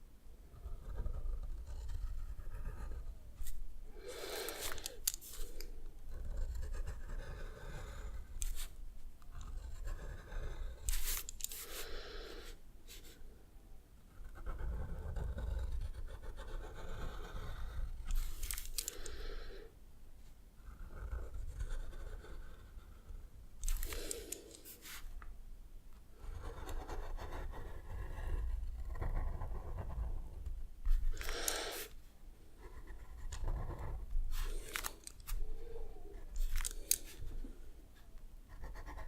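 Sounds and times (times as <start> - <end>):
drawing tool scratching on paper: 0.5 - 13.2, 14.1 - 19.3, 20.6 - 25.2, 26.1 - 37.7, 38.5 - 39.0
heavy breathing: 3.9 - 5.7, 31.1 - 32.0.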